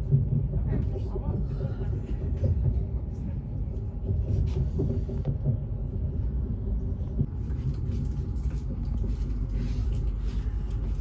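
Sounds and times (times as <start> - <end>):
train wheels rumbling on rails: 0.0 - 11.0.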